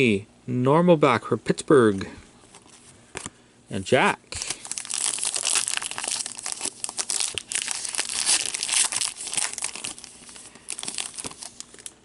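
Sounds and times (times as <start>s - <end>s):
card pack wrappers crinkling: 4.3s - 12.0s.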